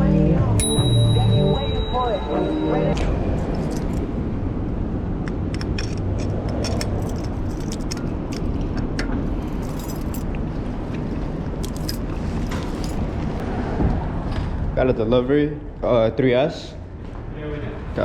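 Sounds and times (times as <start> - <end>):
road rumble: 0.0 - 18.0
wind: 0.3 - 18.0
bike metallic jangling and clicks: 3.5 - 4.1, 5.3 - 13.2.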